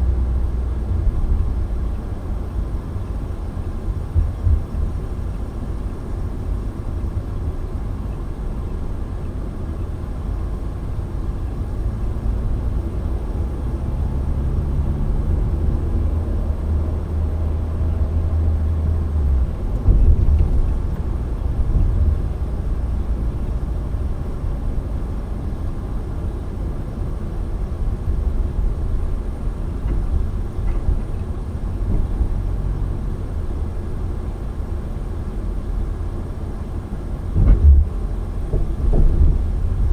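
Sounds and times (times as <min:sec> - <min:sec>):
car engine and road noise: 0:00.0 - 0:39.9
low bump: 0:37.3 - 0:39.9.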